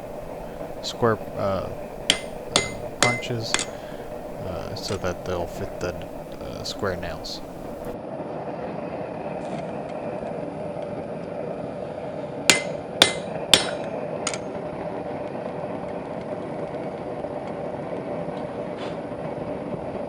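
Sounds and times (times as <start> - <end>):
hammer blows on steel punch: 0.0 - 8.0
steady rushing noise: 0.0 - 8.0.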